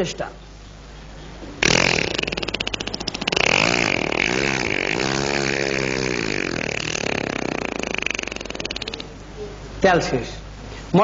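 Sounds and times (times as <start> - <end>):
man imitating motorcycle engine: 1.6 - 9.2.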